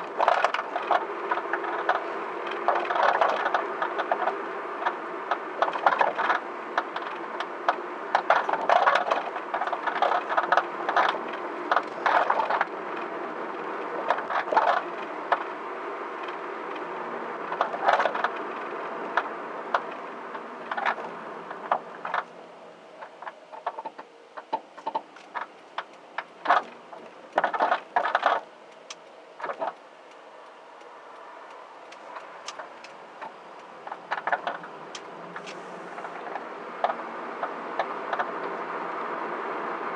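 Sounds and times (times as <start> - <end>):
suspension knocking and rattling: 0.0 - 15.5
road noise while driving: 0.0 - 39.9.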